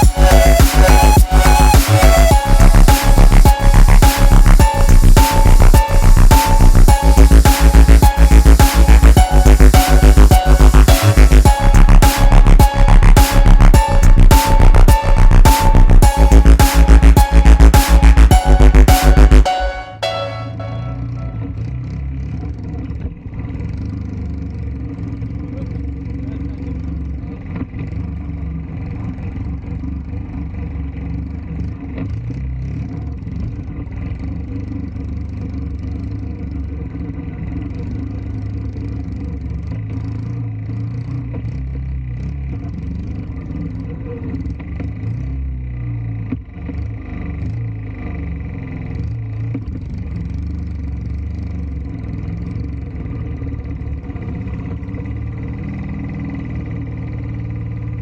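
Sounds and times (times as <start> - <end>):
small motorcycle engine running: 21.4 - 45.0.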